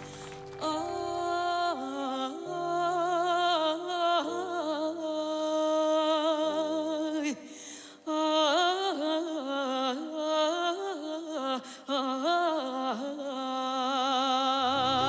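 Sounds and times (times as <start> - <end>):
sustained low accompaniment notes: 0.0 - 3.6
woman singing with vibrato: 0.0 - 15.0.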